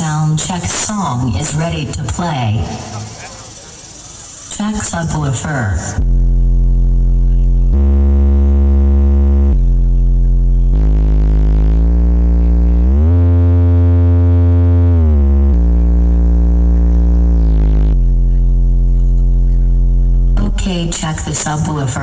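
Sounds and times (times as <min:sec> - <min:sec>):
deep bass tones from subwoofers: 0:00.0 - 0:22.0.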